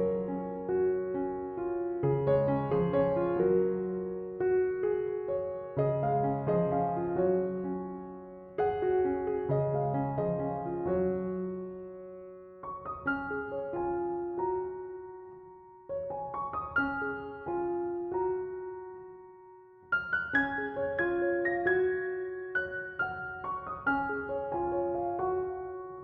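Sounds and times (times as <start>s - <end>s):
gentle piano music: 0.0s - 26.0s.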